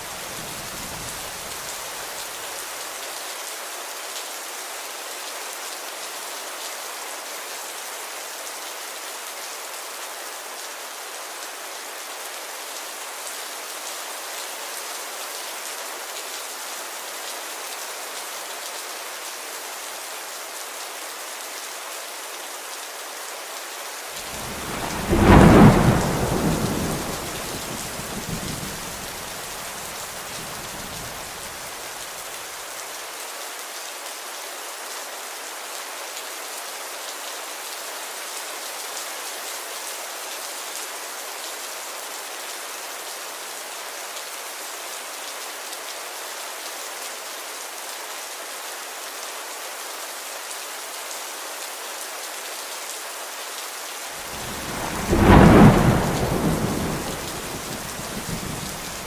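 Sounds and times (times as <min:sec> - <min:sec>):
steady rain: 0:00.0 - 0:59.0
rolling thunder clap: 0:24.3 - 0:29.3, 0:54.3 - 0:59.0.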